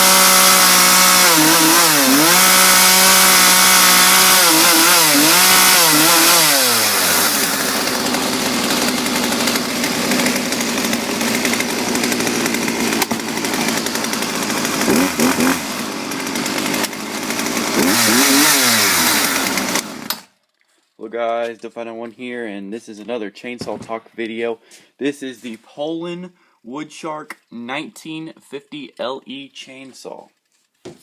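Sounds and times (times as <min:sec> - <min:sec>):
chainsaw idling and revving: 0:00.0 - 0:20.3.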